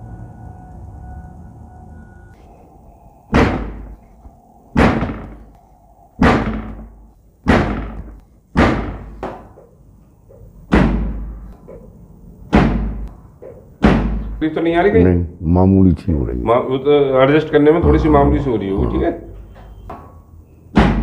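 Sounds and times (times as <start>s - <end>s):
heavy sharp thuds: 3.3s - 4.0s, 4.7s - 5.5s, 6.2s - 9.6s, 10.7s - 11.5s, 12.5s - 14.4s.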